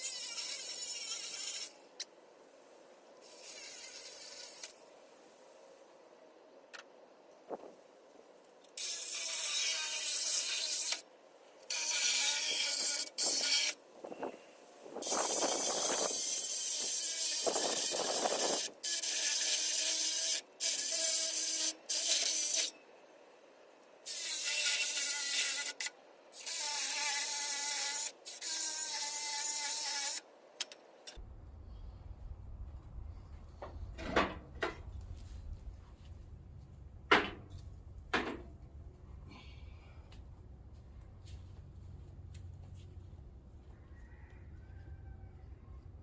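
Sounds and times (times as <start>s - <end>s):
angle grinder cutting metal: 8.8s - 11.0s, 11.7s - 13.8s, 15.0s - 22.7s, 24.1s - 30.2s.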